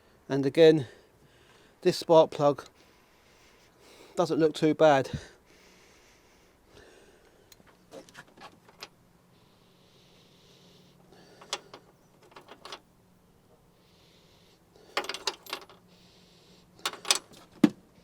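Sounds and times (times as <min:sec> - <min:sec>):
metal tools clinking and rattling: 0:08.4 - 0:08.9, 0:11.4 - 0:12.8, 0:14.9 - 0:15.9, 0:16.8 - 0:17.5.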